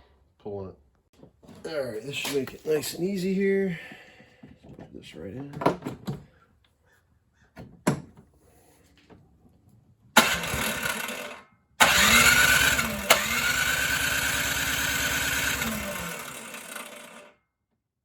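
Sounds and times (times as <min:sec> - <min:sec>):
electric starter cranking engine: 0:10.2 - 0:17.4.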